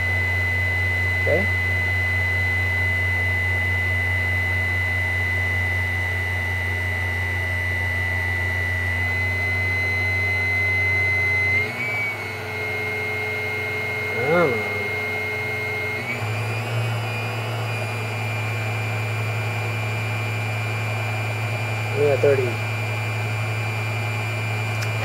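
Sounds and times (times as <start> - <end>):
blender motor whining: 0.0 - 25.0.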